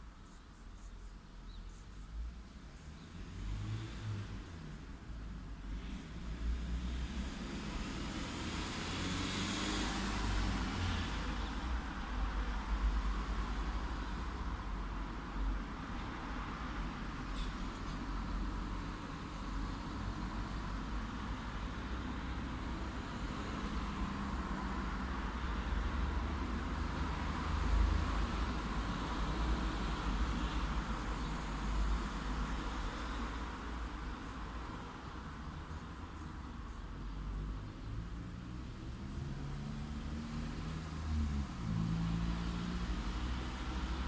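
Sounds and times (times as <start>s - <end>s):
vehicle passing: 6.6s - 11.4s, 22.8s - 44.0s.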